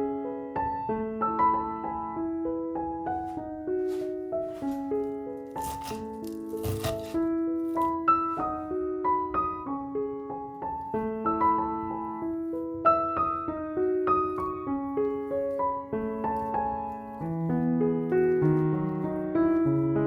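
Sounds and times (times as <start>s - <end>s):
piano music: 0.0s - 20.0s.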